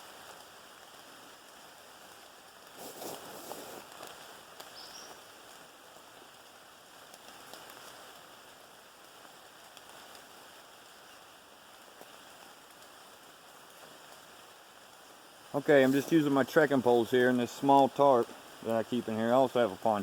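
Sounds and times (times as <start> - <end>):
steady rain hiss: 0.0 - 20.0
short rustle: 2.7 - 5.2.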